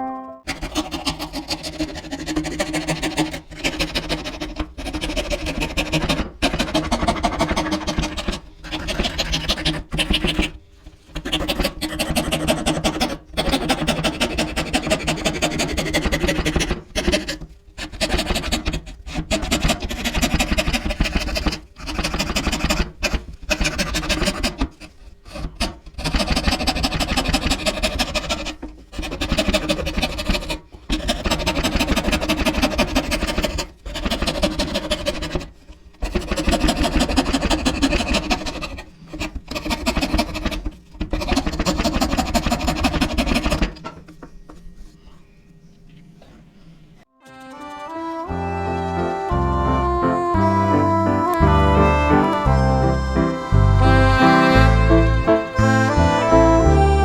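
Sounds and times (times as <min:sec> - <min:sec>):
hand saw cutting wood: 0:00.5 - 0:44.0.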